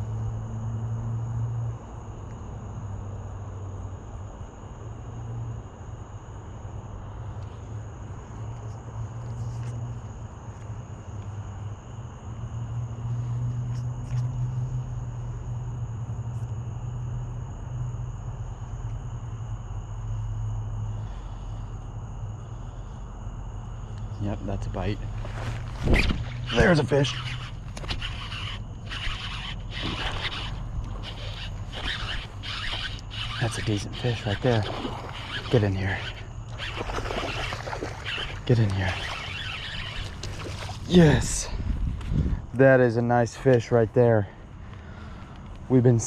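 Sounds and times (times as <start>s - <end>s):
low droning hum: 0.0s - 46.0s
night insects trilling: 0.0s - 46.0s.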